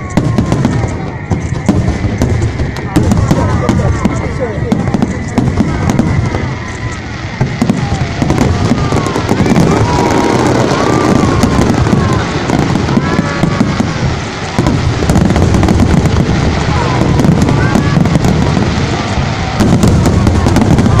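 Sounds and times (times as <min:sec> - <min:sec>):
crowd voices: 0:00.0 - 0:21.0
fireworks booming and crackling: 0:00.0 - 0:21.0.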